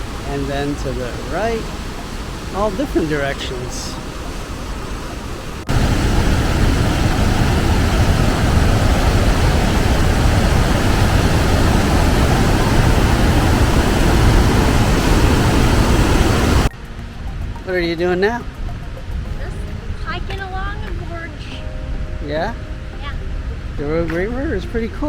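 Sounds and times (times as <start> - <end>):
whitewater roaring: 0.0 - 16.7.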